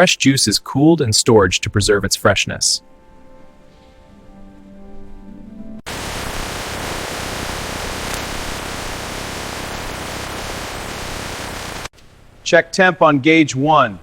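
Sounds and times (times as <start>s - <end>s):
background music: 0.0s - 5.8s
loud steady hiss: 5.9s - 12.6s.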